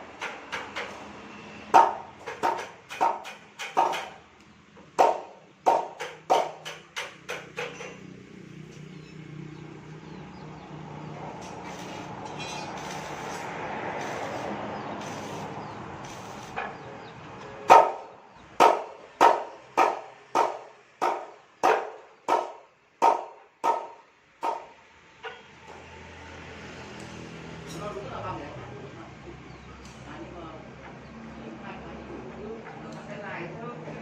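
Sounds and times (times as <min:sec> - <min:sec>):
steady hiss: 0:14.0 - 0:16.6
dog barking: 0:17.7 - 0:18.0.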